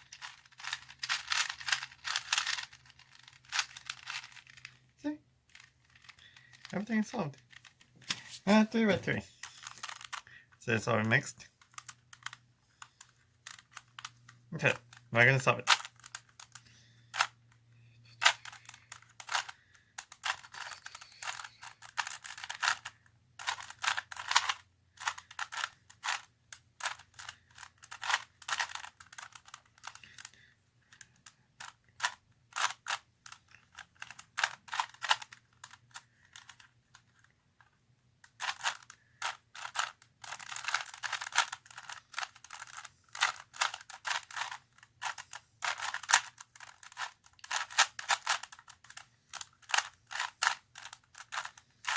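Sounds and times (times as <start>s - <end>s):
puzzle cube layers clicking: 0.0s - 4.8s, 5.5s - 17.4s, 18.2s - 30.3s, 31.0s - 37.1s, 38.2s - 51.9s.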